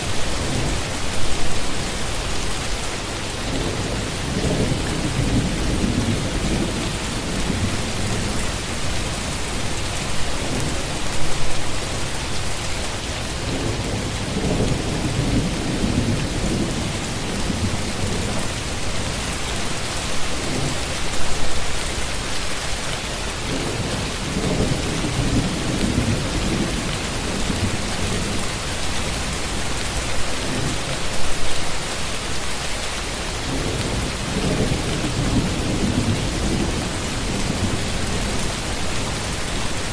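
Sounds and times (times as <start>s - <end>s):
thunder rumbling: 0.0s - 12.7s, 13.3s - 22.2s, 33.4s - 39.9s
heavy rain falling: 0.0s - 39.9s.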